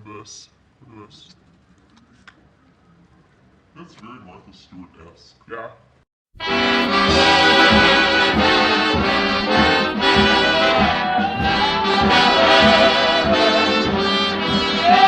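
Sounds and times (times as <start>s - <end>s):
brass music over steady beat: 6.4s - 15.0s.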